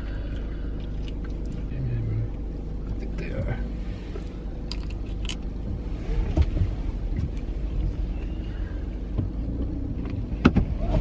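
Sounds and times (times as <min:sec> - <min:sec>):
car engine and tyre rumble: 0:00.0 - 0:11.0.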